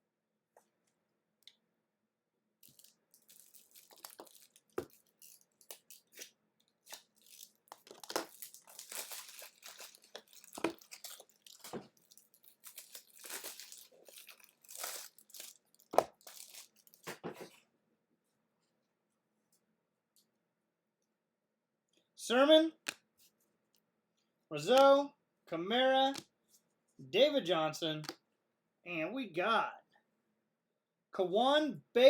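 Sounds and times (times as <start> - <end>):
wrapper tearing and crackling: 2.6 - 17.2
cards rustling and clicking: 2.6 - 17.6.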